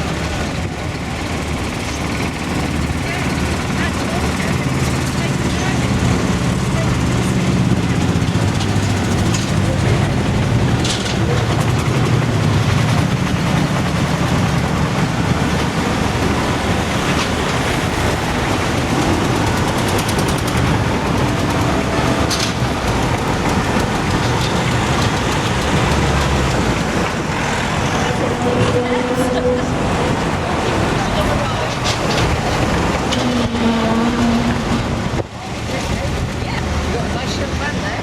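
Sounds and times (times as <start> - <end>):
engine rumbling: 0.0 - 38.0
rushing noise: 0.0 - 38.0.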